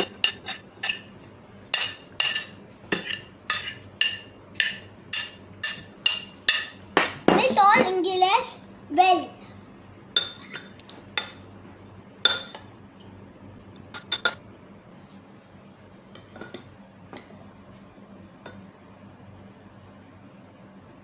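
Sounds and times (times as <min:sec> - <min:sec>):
metal spoon clinking against bowl: 0:00.0 - 0:06.8, 0:12.2 - 0:12.7, 0:13.9 - 0:14.4.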